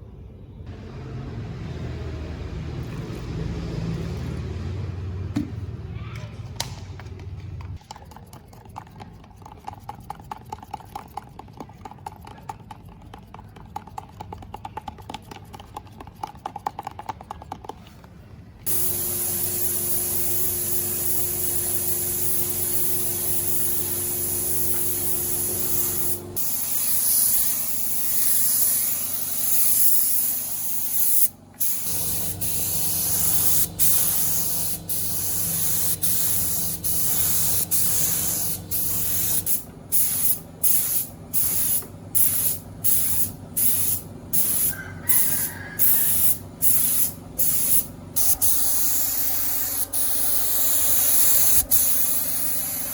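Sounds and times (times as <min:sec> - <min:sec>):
spray gun hissing: 0:18.7 - 0:52.9.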